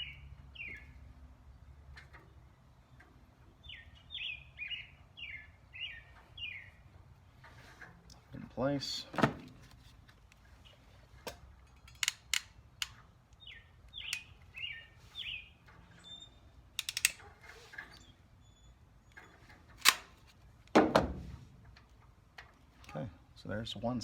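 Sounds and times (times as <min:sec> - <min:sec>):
bird chirping: 0:00.0 - 0:07.0, 0:13.3 - 0:17.2
crimping pliers clicking: 0:11.3 - 0:14.3, 0:16.8 - 0:17.2, 0:19.8 - 0:20.2.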